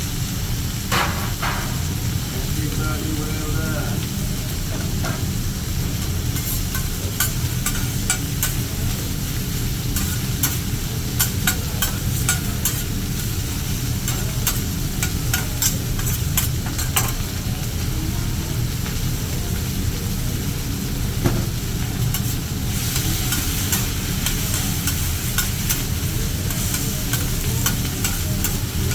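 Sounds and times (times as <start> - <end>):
food sizzling: 0.0 - 28.9
metal spatulas clicking on griddle: 6.4 - 8.7, 10.0 - 13.4, 14.0 - 17.2, 23.0 - 28.9.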